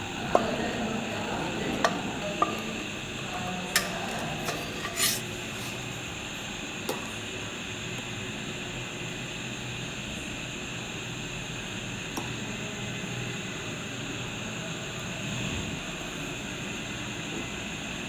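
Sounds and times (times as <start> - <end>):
kitchen utensils clinking: 3.8 - 6.1.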